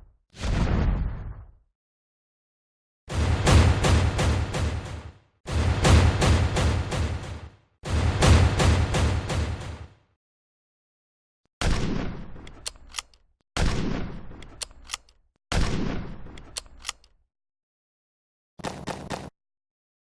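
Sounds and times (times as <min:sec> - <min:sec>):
heavy gunshots: 0:03.1 - 0:10.0
rapid gunfire cracks: 0:03.1 - 0:10.1, 0:11.6 - 0:17.0, 0:18.6 - 0:19.3
sharp clicks: 0:12.4 - 0:13.3, 0:14.4 - 0:15.2, 0:16.3 - 0:17.2.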